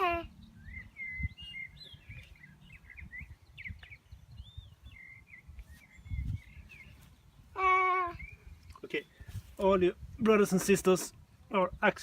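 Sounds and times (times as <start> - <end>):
high-pitched chirps and peeps: 0.0 - 9.3.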